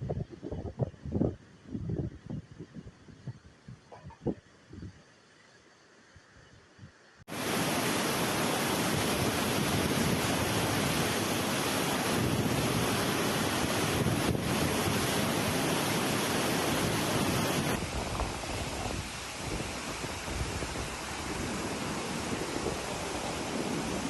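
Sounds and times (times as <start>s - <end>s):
storm water rushing: 7.3s - 24.0s
wind rushing: 7.3s - 24.0s.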